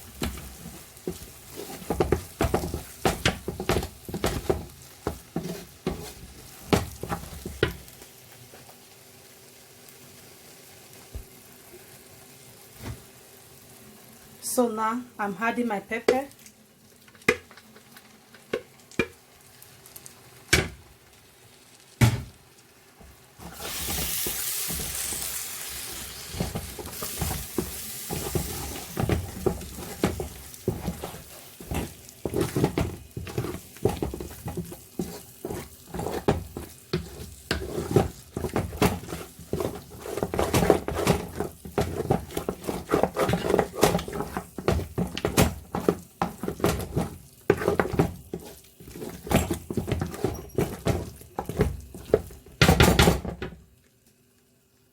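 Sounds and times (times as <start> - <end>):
food sizzling in hot pot: 0.0 - 54.9
spoon scraping against pot: 25.9 - 52.2.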